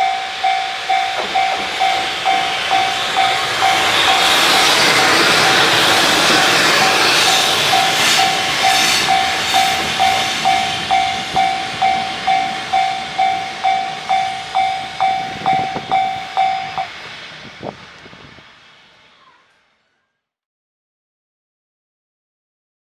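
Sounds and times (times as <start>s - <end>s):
level-crossing bell ringing: 0.0s - 17.0s
freight train passing: 0.0s - 20.1s.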